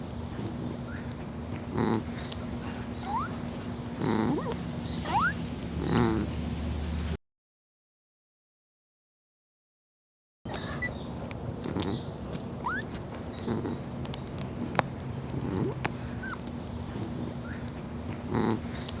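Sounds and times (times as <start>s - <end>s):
steady low hum: 0.0s - 7.2s
animal short low calls: 0.2s - 6.4s, 11.6s - 19.0s
rising squeaks and clicks: 4.4s - 5.5s, 11.8s - 13.5s.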